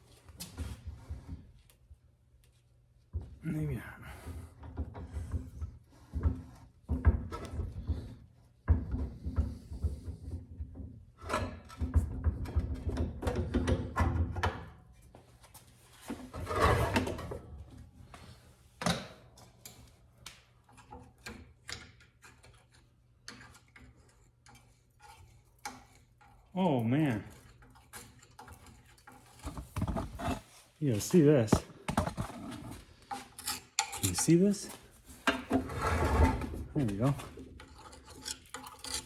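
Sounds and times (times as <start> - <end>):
metal parts clanking and scraping: 31.9 - 34.6.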